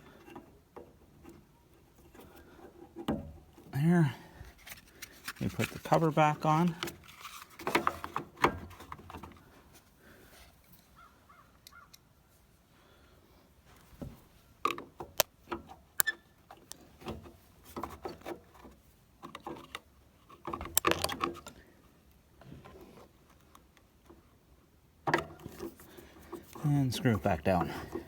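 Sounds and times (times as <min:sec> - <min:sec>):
rustling: 0:04.0 - 0:12.4
plastic clicks and knocks: 0:20.4 - 0:21.6.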